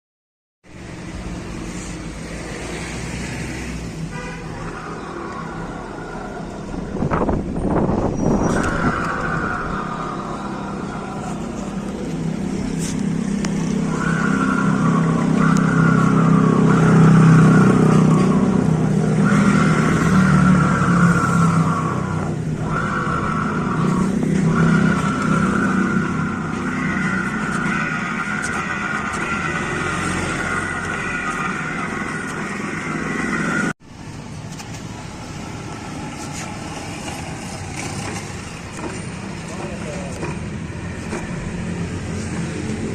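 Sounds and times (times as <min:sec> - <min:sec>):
high whine: 0:04.0 - 0:34.0
motorcycle running: 0:35.6 - 0:42.9.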